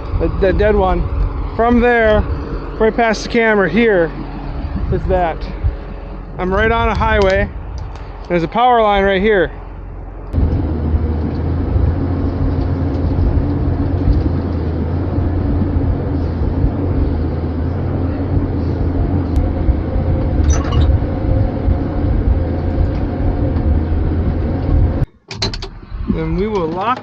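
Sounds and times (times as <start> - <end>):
heavy machine engine running: 0.0 - 27.0
short high squeak: 20.4 - 21.0.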